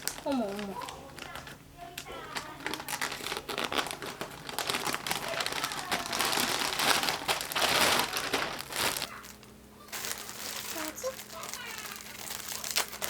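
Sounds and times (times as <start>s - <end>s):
packaging crinkling and rustling: 0.0s - 13.0s.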